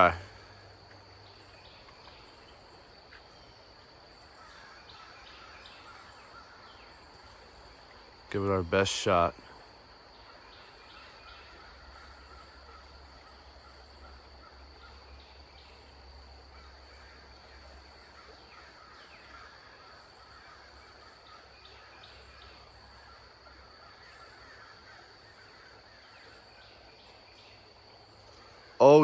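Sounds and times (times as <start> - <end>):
crickets trilling: 0.0 - 29.0
bird calls and chirps: 10.1 - 15.9.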